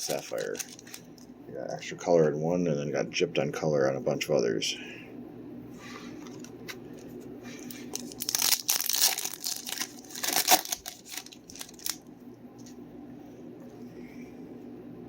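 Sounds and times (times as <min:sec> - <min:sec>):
foil wrapper tearing and crinkling: 0:00.0 - 0:01.1, 0:07.6 - 0:12.0.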